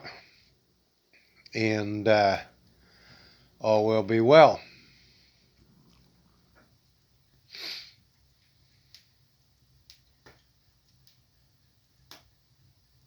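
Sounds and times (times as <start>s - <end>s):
wood fire crackling: 0.0s - 13.0s
fire hissing pop: 8.7s - 13.0s.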